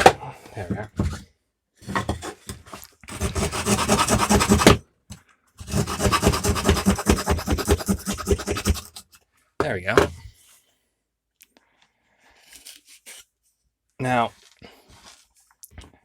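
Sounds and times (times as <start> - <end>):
small saw blade sawing: 3.1 - 4.8, 5.6 - 9.2.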